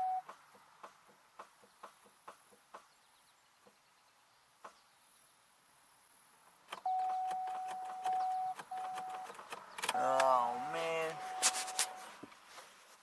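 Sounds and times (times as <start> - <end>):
car dashboard warning chime: 0.0 - 0.3, 6.9 - 9.3, 10.0 - 12.1.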